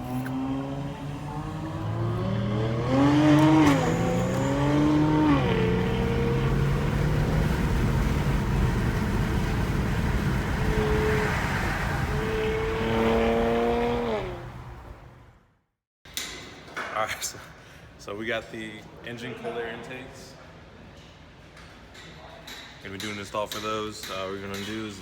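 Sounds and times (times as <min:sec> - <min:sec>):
car engine revving: 0:00.0 - 0:15.3.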